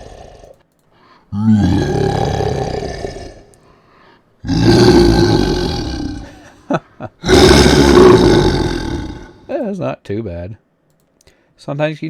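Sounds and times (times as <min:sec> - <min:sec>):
monster-like voice growling: 0:00.0 - 0:00.5, 0:01.3 - 0:03.5, 0:04.4 - 0:06.5, 0:07.2 - 0:09.5.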